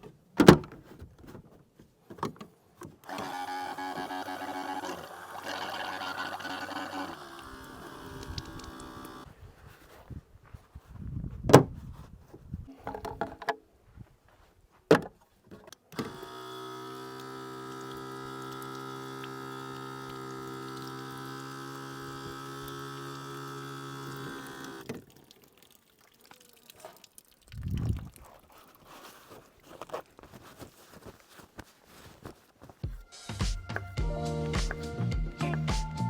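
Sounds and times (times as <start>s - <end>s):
electric water pump humming: 3.0s - 9.3s, 15.8s - 29.4s.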